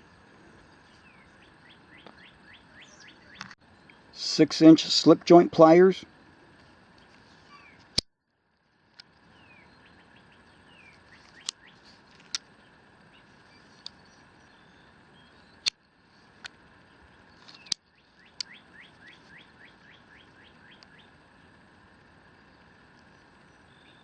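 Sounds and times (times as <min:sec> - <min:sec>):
small bird chirping: 0:07.0 - 0:08.0, 0:16.8 - 0:21.5.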